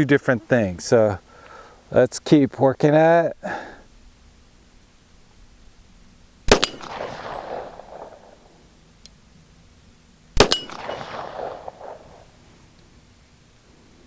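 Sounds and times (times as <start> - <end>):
pistol shots with ringing echo: 6.5 - 8.6, 10.4 - 12.4.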